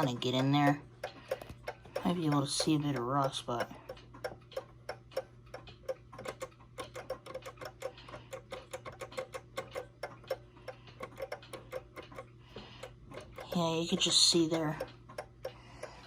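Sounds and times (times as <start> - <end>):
mechanical clock ticking: 0.0 - 16.0.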